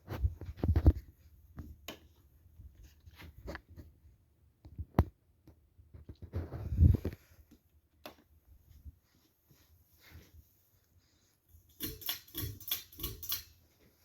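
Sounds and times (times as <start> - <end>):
rustling handling noise: 5.9 - 11.7.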